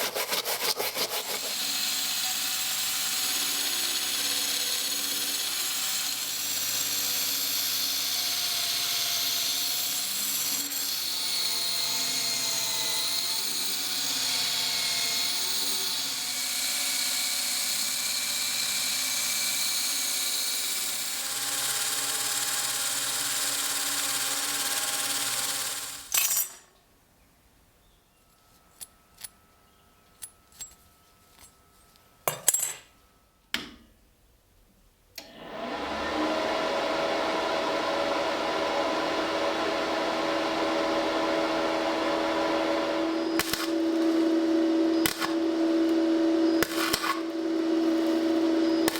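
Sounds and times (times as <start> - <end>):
power tool motor running: 0.9 - 26.2, 35.2 - 48.9.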